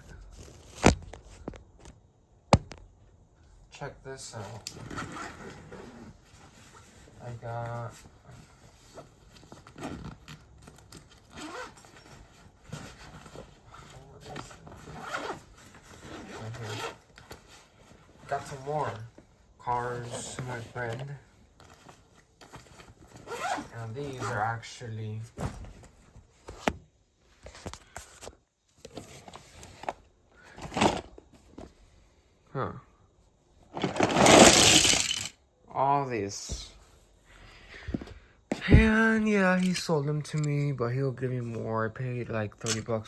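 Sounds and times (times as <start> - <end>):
rustling scrape: 4.4 - 24.6, 33.6 - 35.3
box of toy cars rustling: 28.9 - 31.6, 33.6 - 35.4
toy cars clicking and knocking: 33.8 - 35.4.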